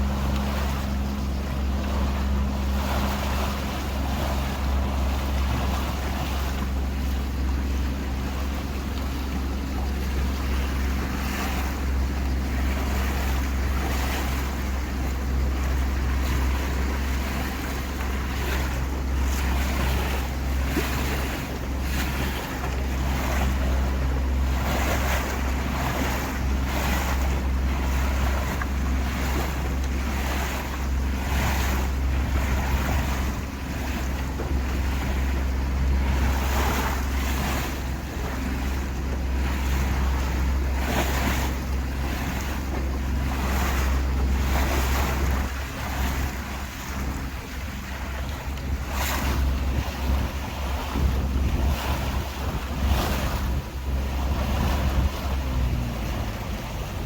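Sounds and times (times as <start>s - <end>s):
boat motor drone: 0.0s - 57.0s
water splashing along hull: 0.0s - 57.0s
wind on microphone: 0.0s - 57.0s.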